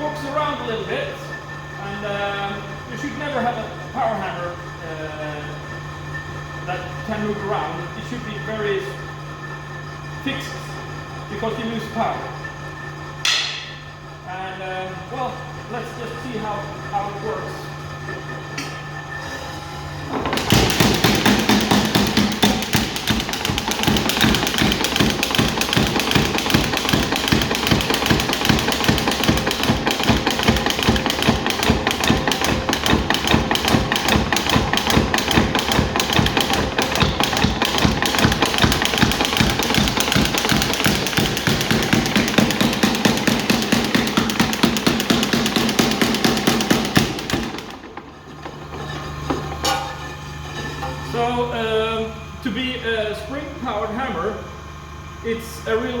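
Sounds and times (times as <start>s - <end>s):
mechanical power hammer blows: 18.6s - 48.7s.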